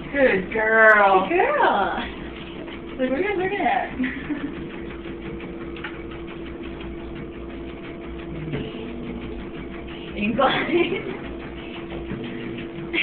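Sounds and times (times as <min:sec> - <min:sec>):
treadmill motor humming: 0:00.0 - 0:13.0.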